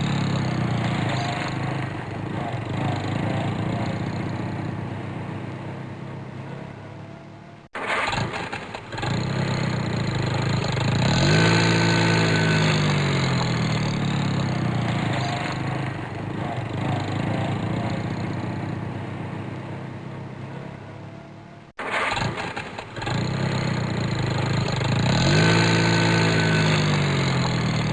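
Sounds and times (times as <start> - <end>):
car engine revving and idling: 0.0 - 27.9
engine starter cranking: 7.8 - 14.3, 21.8 - 27.9.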